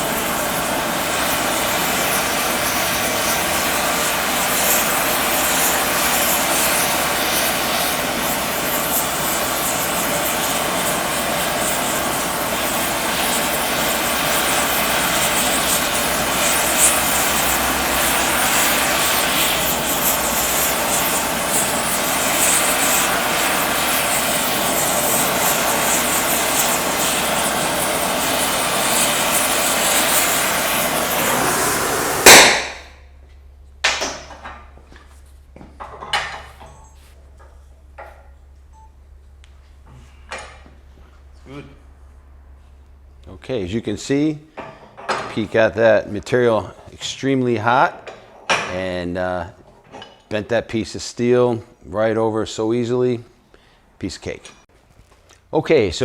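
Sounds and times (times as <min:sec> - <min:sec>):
torch flame rushing: 0:00.0 - 0:32.9.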